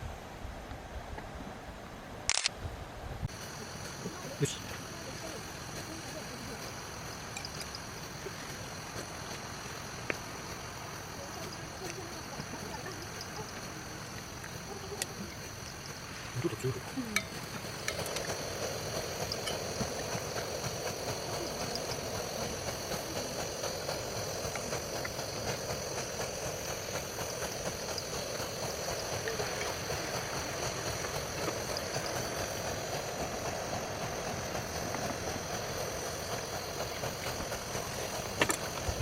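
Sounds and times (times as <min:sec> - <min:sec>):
camping stove burner hissing: 0:00.0 - 0:39.0.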